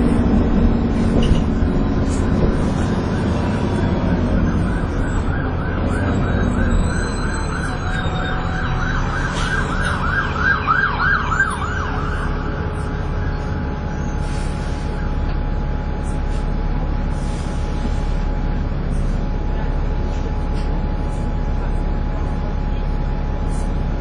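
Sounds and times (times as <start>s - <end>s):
bus engine rumbling: 0.0s - 24.0s
siren yelping: 2.0s - 14.0s.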